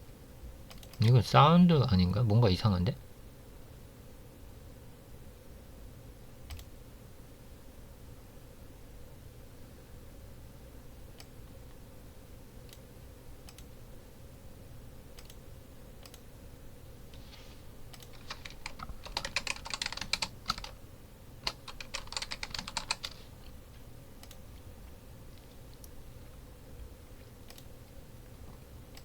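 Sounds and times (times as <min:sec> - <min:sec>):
single keyboard clicks: 0:00.7 - 0:01.1, 0:06.5 - 0:06.7
keyboard typing: 0:00.7 - 0:01.2, 0:17.9 - 0:20.8, 0:21.4 - 0:23.5, 0:24.2 - 0:24.4.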